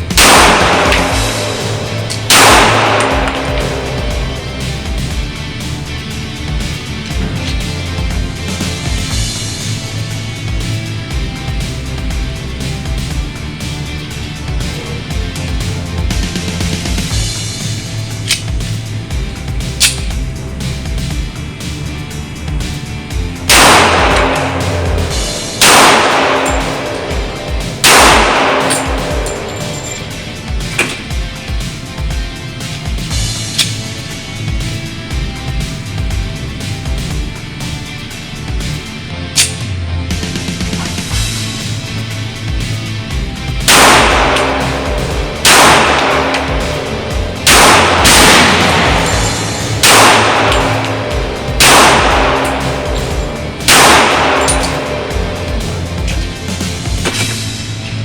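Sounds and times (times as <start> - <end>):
music with steady beat: 0.0 - 58.0
pistol shot: 0.1 - 4.9, 23.5 - 31.1, 43.7 - 55.2, 57.0 - 57.4.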